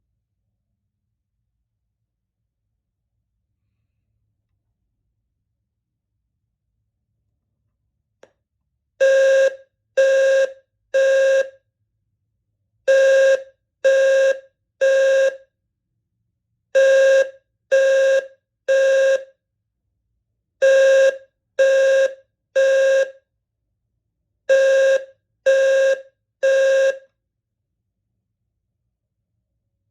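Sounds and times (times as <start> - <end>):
fire alarm horn blasts: 9.0 - 11.6, 12.9 - 15.5, 16.8 - 19.4, 20.6 - 23.2, 24.5 - 27.1.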